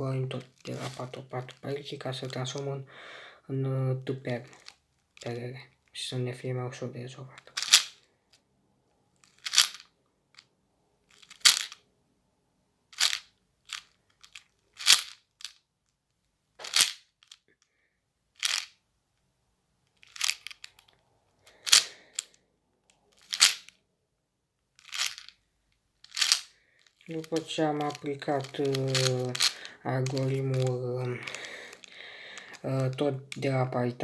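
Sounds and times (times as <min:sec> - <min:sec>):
puzzle cube plastic clacks: 0:00.3 - 0:02.7, 0:04.3 - 0:05.4, 0:07.4 - 0:08.1, 0:09.2 - 0:10.5, 0:11.1 - 0:11.8, 0:13.0 - 0:15.6, 0:16.6 - 0:17.4, 0:18.4 - 0:18.8, 0:19.9 - 0:22.3, 0:22.9 - 0:23.8, 0:24.8 - 0:25.4, 0:26.0 - 0:33.8.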